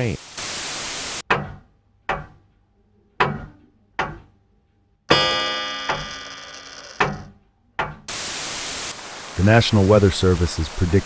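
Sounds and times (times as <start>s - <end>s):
ringing chord: 5.1s - 7.1s
sharp struck musical hits: 5.1s - 7.2s.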